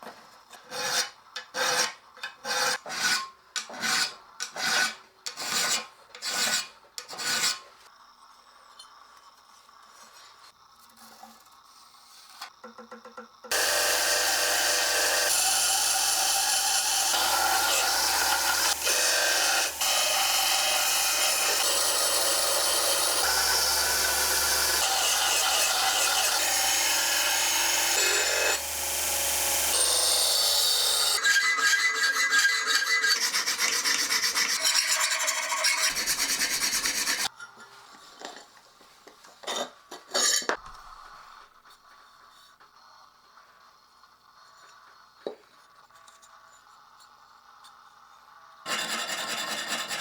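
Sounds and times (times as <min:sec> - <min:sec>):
file rasping on steel: 0:00.7 - 0:07.7, 0:13.5 - 0:37.3, 0:48.7 - 0:50.0.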